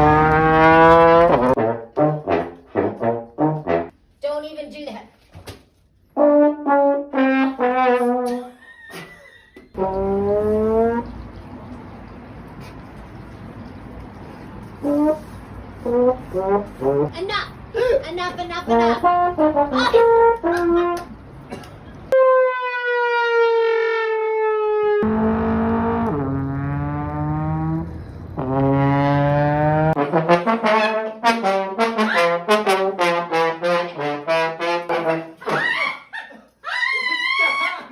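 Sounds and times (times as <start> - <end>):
brass instrument comic phrases: 0.0 - 3.9, 6.2 - 8.5, 9.8 - 11.1, 14.8 - 17.4, 18.6 - 21.1, 24.6 - 35.7
descending trombone fail effect: 0.0 - 3.9, 9.8 - 11.1, 22.2 - 35.4.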